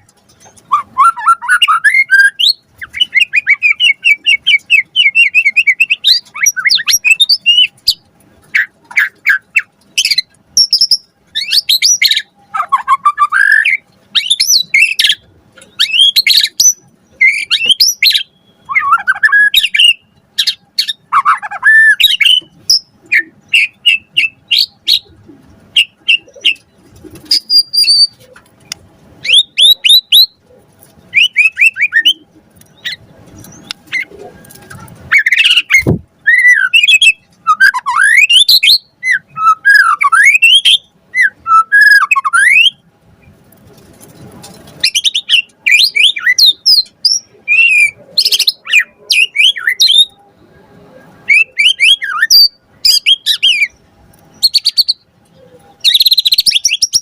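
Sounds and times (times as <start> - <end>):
bird singing whistled phrases: 0.7 - 7.7, 15.8 - 25.0, 29.2 - 30.4, 31.1 - 32.2, 35.1 - 42.8, 44.8 - 50.2, 51.2 - 53.8, 55.8 - 57.0.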